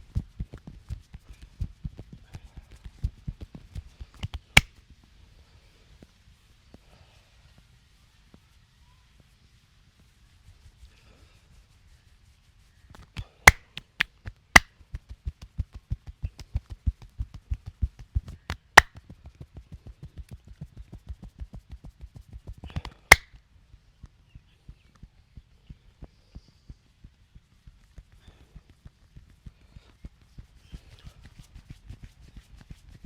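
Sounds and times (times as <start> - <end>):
sharp cracks: 4.2 - 4.7, 13.2 - 14.7, 22.9 - 23.3
hands pounding on body: 13.2 - 14.7.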